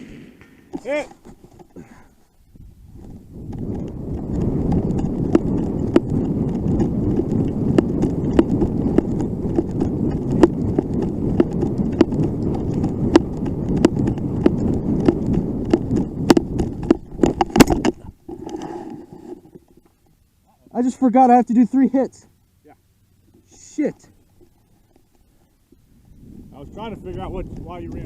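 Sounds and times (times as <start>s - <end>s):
rumble of movement: 0.0s - 20.4s, 22.4s - 28.0s
running footsteps: 2.9s - 20.0s
gear rattling: 3.0s - 19.9s.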